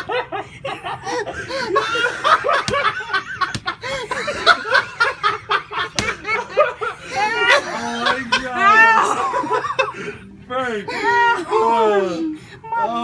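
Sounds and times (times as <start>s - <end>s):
hearty laughter: 0.0s - 10.3s.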